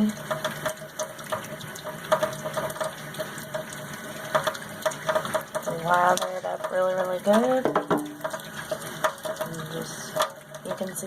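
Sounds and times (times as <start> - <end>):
tap water running: 0.0 - 11.0.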